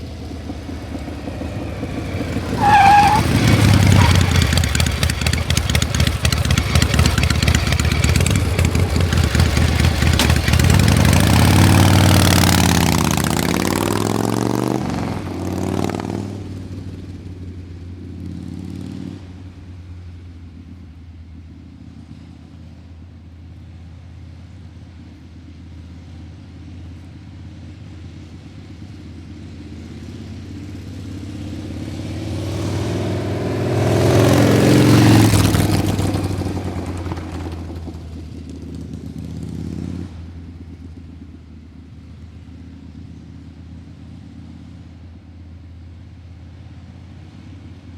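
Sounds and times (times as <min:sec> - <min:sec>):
engine running with sliding pitch: 0:00.0 - 0:16.9.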